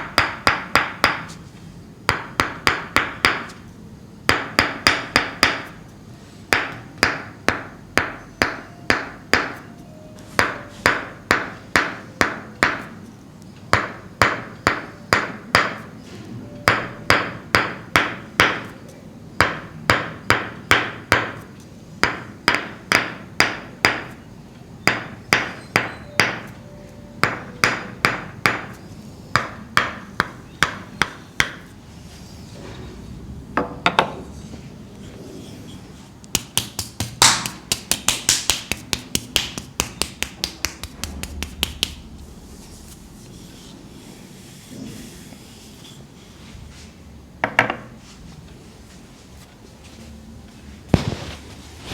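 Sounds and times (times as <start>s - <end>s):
wooden mallet tapping wooden wedge: 2.1s - 3.6s, 6.5s - 9.7s, 10.4s - 13.0s, 13.7s - 15.8s, 16.6s - 18.7s, 19.4s - 24.2s, 24.8s - 26.5s, 27.2s - 31.7s, 36.3s - 42.0s.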